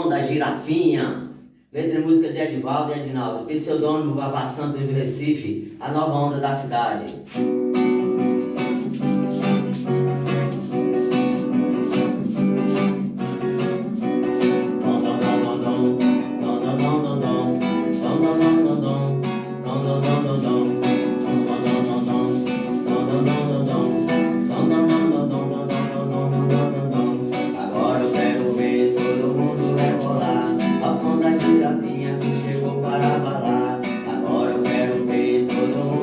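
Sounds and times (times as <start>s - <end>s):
strummed guitar: 7.0s - 36.0s
steady dance beat: 8.2s - 19.4s, 20.2s - 36.0s.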